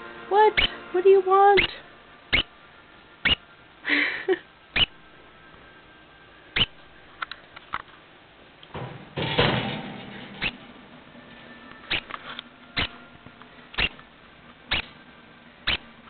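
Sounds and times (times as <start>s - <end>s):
degu hiccuping squeaks: 0.5s - 0.8s, 1.6s - 2.6s, 3.2s - 3.5s, 4.7s - 5.0s, 6.6s - 6.9s, 11.9s - 12.1s, 12.8s - 13.0s, 13.7s - 14.0s, 14.7s - 14.9s, 15.6s - 15.9s
rustling noise: 8.8s - 12.5s.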